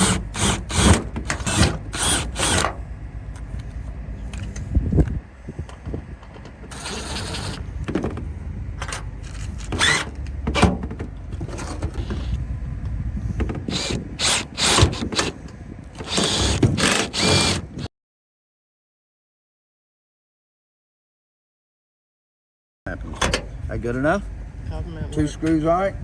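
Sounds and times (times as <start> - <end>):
power tool driving screws: 0.0 - 2.8, 6.7 - 7.7, 9.2 - 10.1, 13.6 - 15.4, 16.0 - 17.9
low rumble: 1.1 - 17.5.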